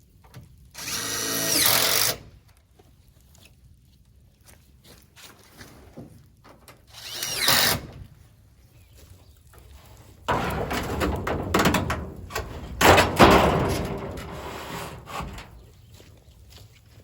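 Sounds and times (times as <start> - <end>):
wooden knocks and scraping: 10.2 - 16.1
loud thumps: 10.3 - 15.7.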